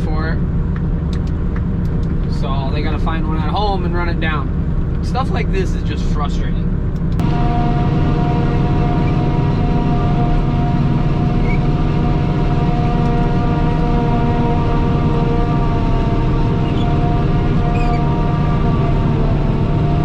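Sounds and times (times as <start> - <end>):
farm machine engine running: 7.1 - 20.0.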